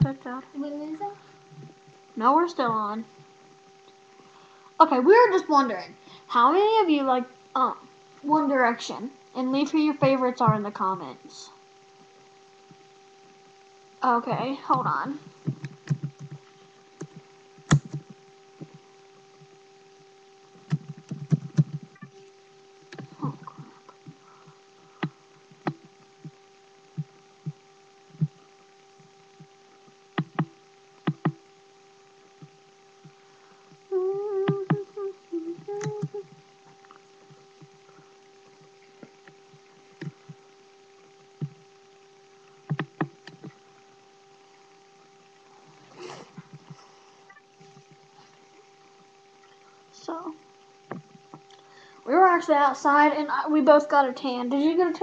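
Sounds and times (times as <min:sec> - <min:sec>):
steady electrical hum: 0:00.0 - 0:55.0
sharp clicks and knocks: 0:15.4 - 0:18.8, 0:30.2 - 0:31.4, 0:42.7 - 0:43.6.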